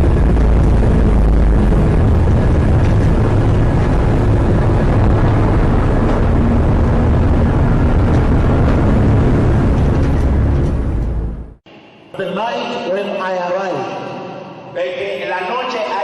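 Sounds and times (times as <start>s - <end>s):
wind blowing across microphone: 0.0s - 11.3s.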